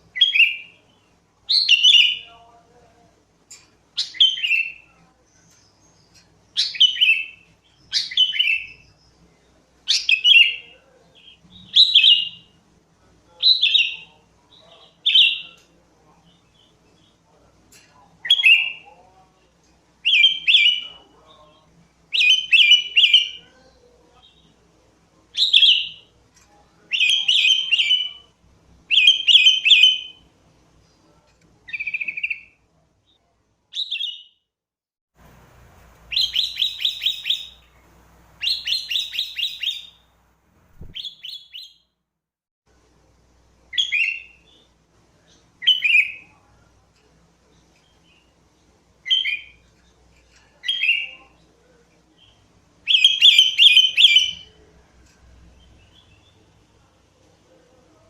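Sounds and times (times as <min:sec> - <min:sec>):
bird singing whistled notes: 0:36.1 - 0:37.7, 0:38.4 - 0:40.0, 0:40.8 - 0:41.8, 0:52.9 - 0:54.5.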